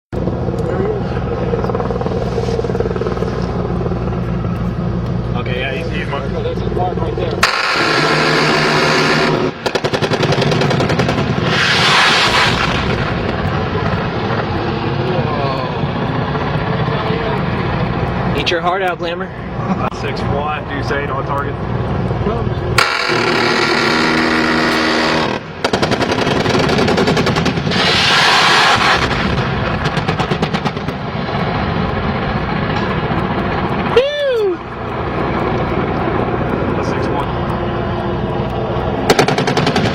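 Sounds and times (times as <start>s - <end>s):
helicopter noise: 0.1s - 39.9s
steady hum: 0.1s - 39.9s
helicopter cannon firing rapid burst: 0.2s - 4.3s, 7.4s - 18.4s, 22.8s - 34.0s, 38.9s - 39.9s
loud hiss: 7.4s - 10.3s, 11.4s - 13.2s, 27.7s - 29.3s
hissing: 7.4s - 18.2s, 22.8s - 37.5s.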